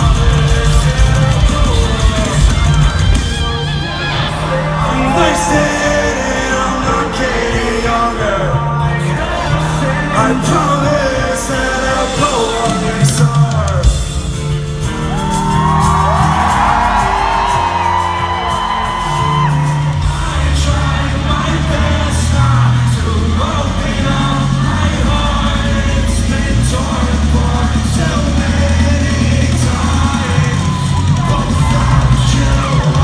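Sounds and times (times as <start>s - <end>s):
crowd shouting and whooping: 0.0s - 8.3s, 14.6s - 22.8s, 27.0s - 33.0s
crowd singing together: 0.0s - 33.0s
lead singer singing: 0.0s - 33.0s
rock band playing: 0.0s - 33.0s.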